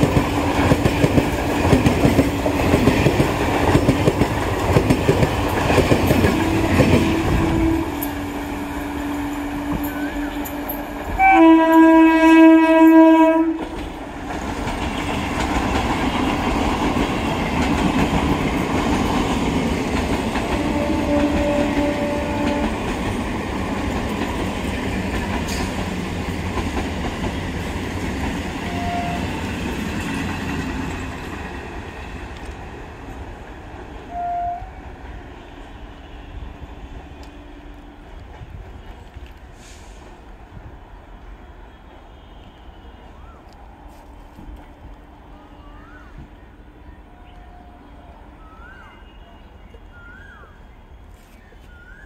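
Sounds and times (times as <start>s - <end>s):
train rumble and wheel clatter: 0.0s - 52.0s
train horn blast: 6.2s - 14.0s, 20.5s - 23.0s, 28.6s - 29.4s, 34.0s - 38.2s, 41.7s - 43.2s.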